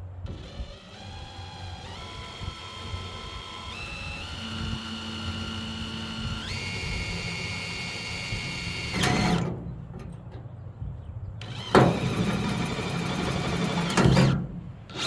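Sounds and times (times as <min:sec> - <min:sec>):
small power tool whining: 0:00.2 - 0:09.5, 0:11.4 - 0:15.0.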